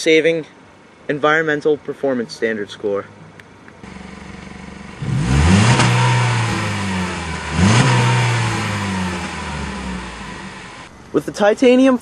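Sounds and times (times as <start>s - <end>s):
car engine revving: 3.8s - 10.9s.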